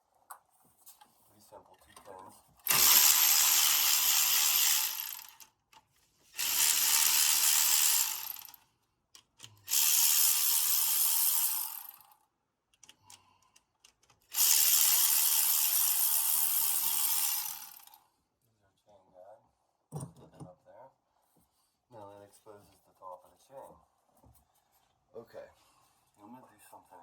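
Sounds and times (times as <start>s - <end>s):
cordless power tool running: 2.6s - 5.4s, 6.4s - 8.6s, 9.7s - 12.0s, 14.3s - 18.0s.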